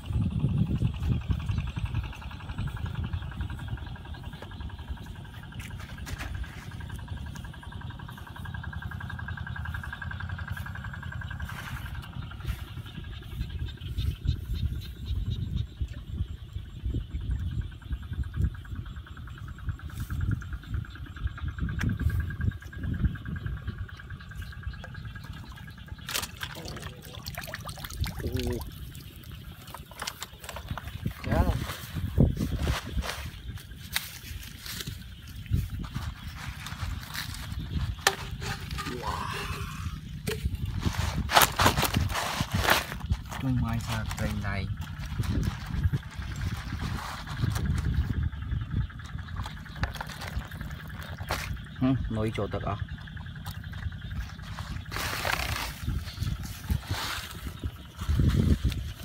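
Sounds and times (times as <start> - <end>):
water trickling and dripping: 25.2 - 30.6.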